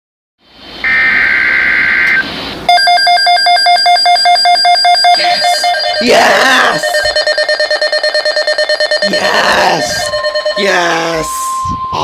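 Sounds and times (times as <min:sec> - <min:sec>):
loud high beeping alarm: 0:00.8 - 0:12.0
shrill digital data burst: 0:04.9 - 0:12.0.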